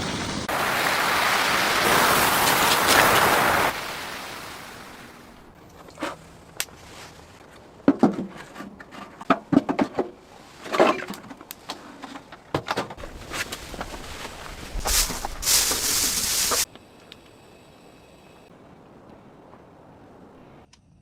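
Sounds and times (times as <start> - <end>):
short rustles: 13.0 - 16.7.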